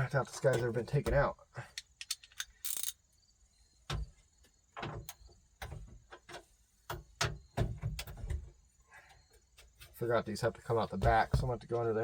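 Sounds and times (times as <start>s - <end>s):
tools clicking and knocking: 0.3s - 3.0s.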